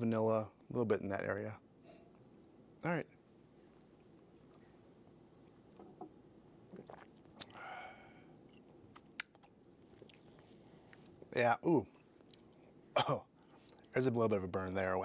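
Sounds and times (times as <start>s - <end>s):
person sipping: 6.6s - 11.3s
lip and tongue clicks: 8.5s - 10.3s.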